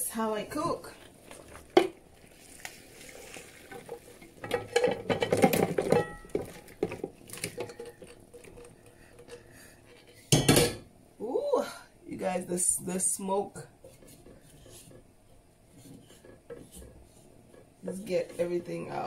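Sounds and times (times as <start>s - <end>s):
metal spoon scraping in a pot: 13.8s - 15.1s, 15.7s - 19.0s.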